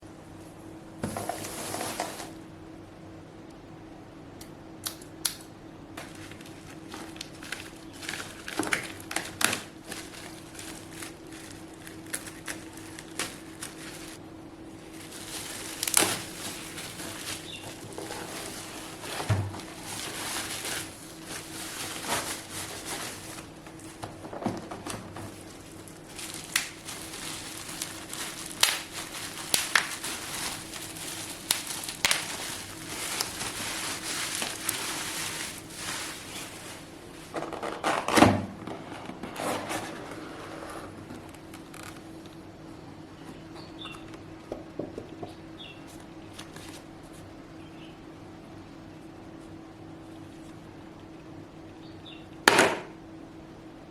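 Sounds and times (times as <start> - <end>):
faint steady hum: 0.0 - 53.9
packaging crinkling and rustling: 1.0 - 2.4, 6.0 - 14.2, 14.8 - 42.4, 45.8 - 47.3.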